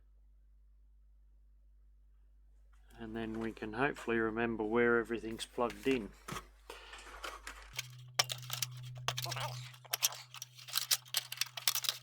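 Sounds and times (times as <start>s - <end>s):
small sharp clicks and scrapes: 7.2s - 12.0s
steady low hum: 7.8s - 12.0s.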